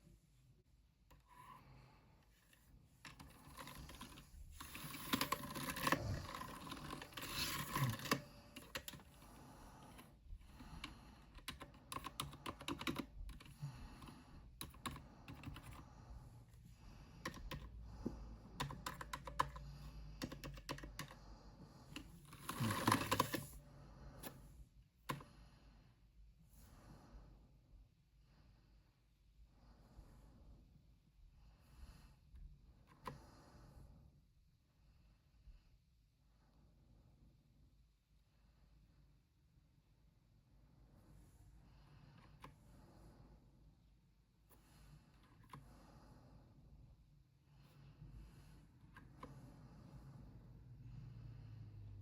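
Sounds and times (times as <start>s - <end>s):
typing on mechanical keyboard: 3.1s - 9.2s, 10.8s - 15.8s, 17.2s - 17.7s, 18.6s - 21.2s, 21.9s - 23.6s.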